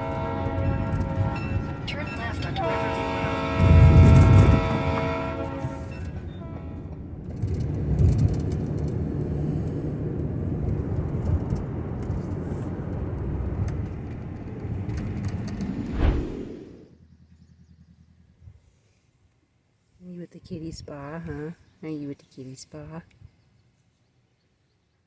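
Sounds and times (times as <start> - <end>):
van road and engine rumble: 3.6 - 15.9, 16.6 - 19.9.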